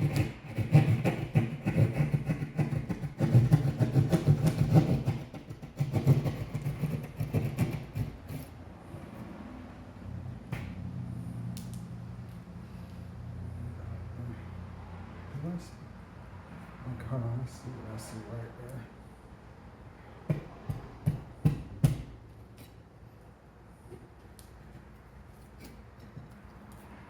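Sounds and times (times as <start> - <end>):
saw cutting drywall: 0.0 - 8.6.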